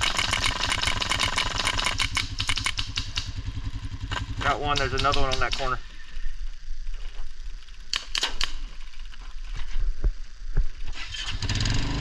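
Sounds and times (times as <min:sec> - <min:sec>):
airsoft gun shots: 0:00.0 - 0:03.4, 0:04.4 - 0:05.8, 0:07.9 - 0:08.6.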